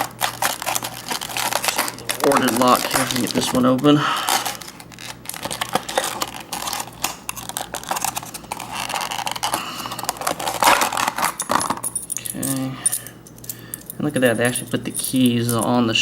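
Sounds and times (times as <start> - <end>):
plastic packaging torn open: 0.0 - 11.6.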